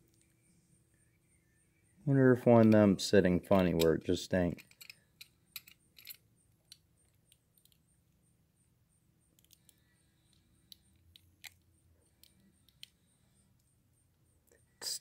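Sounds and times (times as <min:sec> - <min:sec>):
toy car clicking: 0:04.6 - 0:07.8.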